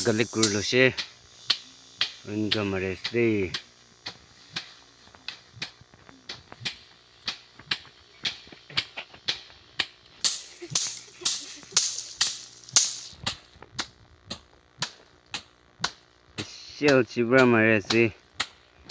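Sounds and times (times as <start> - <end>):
stick striking dried plants: 0.0 - 18.9.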